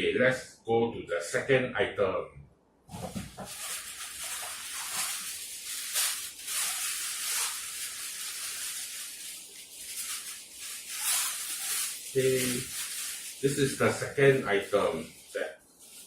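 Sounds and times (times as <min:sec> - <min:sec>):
paper or plastic wrapping rustling: 0:02.9 - 0:16.0.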